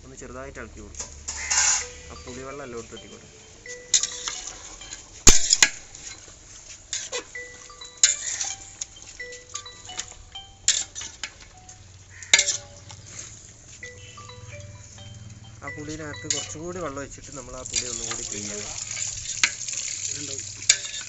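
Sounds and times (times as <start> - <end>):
metal ladle clanking in metal pot: 3.9 - 5.8, 10.0 - 11.5, 12.2 - 13.0, 17.6 - 21.0.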